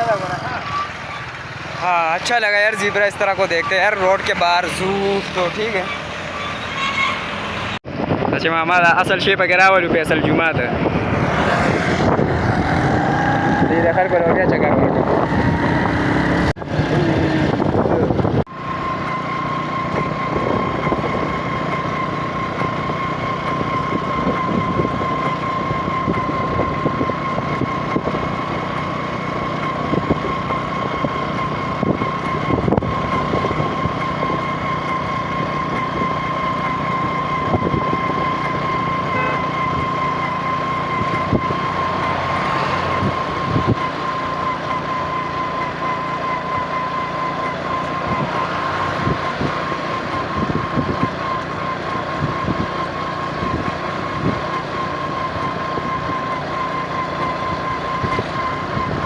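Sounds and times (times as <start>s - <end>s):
vehicle running noise: 0.0s - 59.0s
constant high whine: 17.6s - 42.1s, 42.8s - 59.0s.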